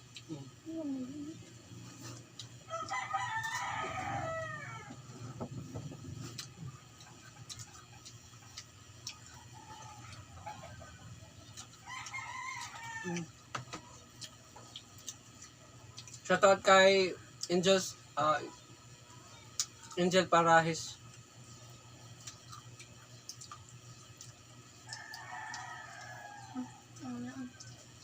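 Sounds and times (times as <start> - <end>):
rooster crowing: 2.7 - 5.3, 11.8 - 13.3, 24.8 - 27.2.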